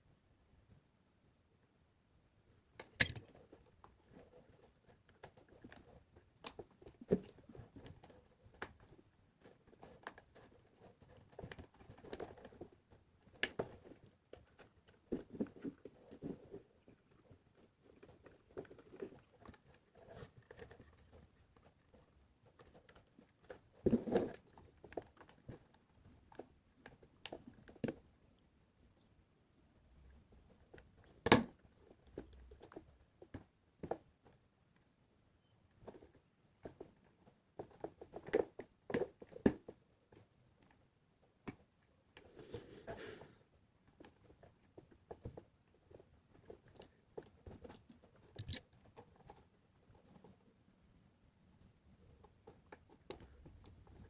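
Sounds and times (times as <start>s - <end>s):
small parts clicking and rustling: 2.8s - 3.6s.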